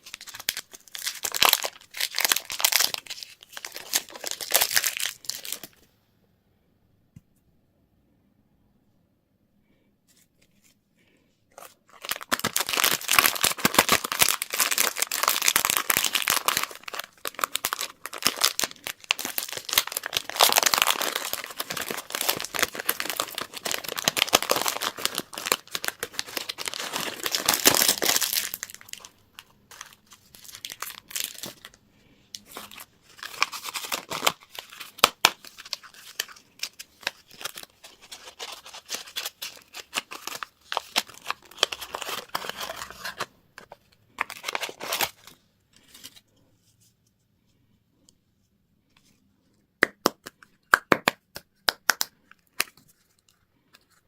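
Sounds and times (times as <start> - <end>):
candy wrappers crinkling: 0.0 - 5.8, 11.6 - 46.2, 51.8 - 54.0.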